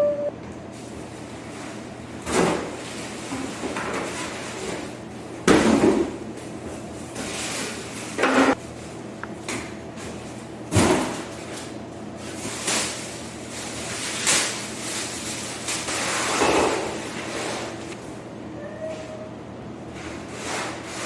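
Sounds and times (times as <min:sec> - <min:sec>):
scrape: 0:15.9 - 0:17.7, 0:20.0 - 0:21.0.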